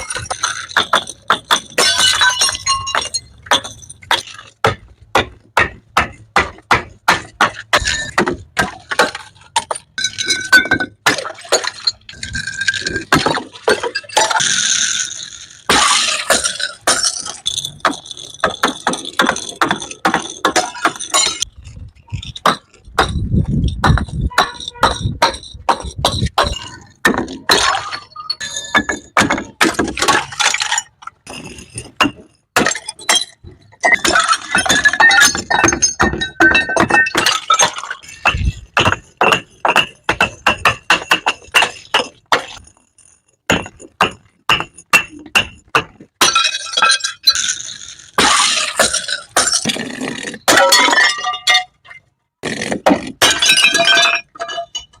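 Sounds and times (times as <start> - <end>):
glass shards clinking: 0.0 - 4.5, 9.4 - 21.5, 32.7 - 43.2, 50.4 - 52.0, 53.2 - 55.0
glass shattering: 0.0 - 4.8, 7.2 - 21.5, 22.2 - 52.0, 52.9 - 55.0
glass bottles hitting stairs: 0.0 - 21.5, 22.1 - 55.0.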